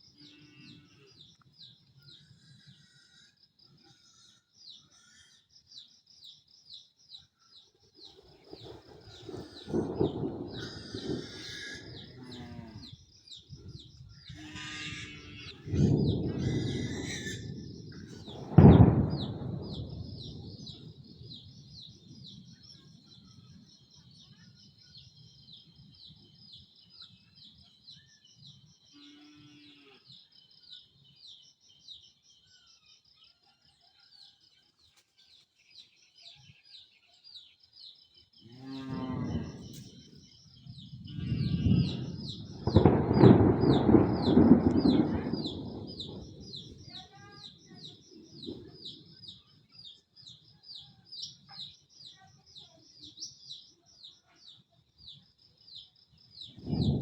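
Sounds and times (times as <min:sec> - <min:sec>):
thunder clap and rumble: 0:08.6 - 0:24.3, 0:38.9 - 0:49.5, 0:56.4 - 0:57.0.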